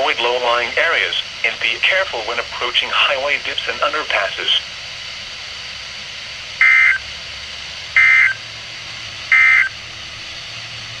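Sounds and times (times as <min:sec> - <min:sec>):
radio hiss: 0:00.0 - 0:05.5, 0:06.4 - 0:07.1, 0:07.9 - 0:08.4, 0:09.3 - 0:09.7.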